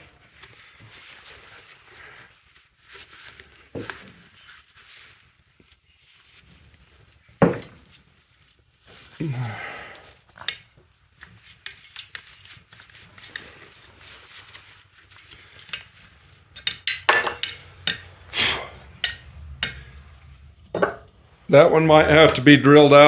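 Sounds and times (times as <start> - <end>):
hand tools clinking on metal: 16.5 - 18.1, 19.0 - 19.8
ringing metal clanks: 16.9 - 18.0.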